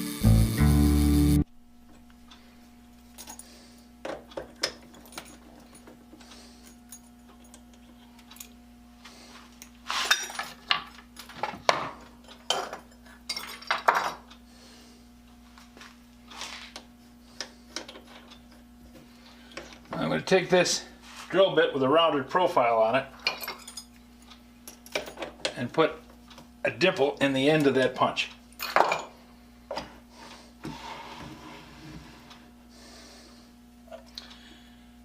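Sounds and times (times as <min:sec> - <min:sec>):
faint steady hum: 0:00.0 - 0:35.0
metal tools clinking: 0:04.5 - 0:06.0, 0:10.0 - 0:11.4, 0:12.2 - 0:14.2, 0:23.2 - 0:24.0.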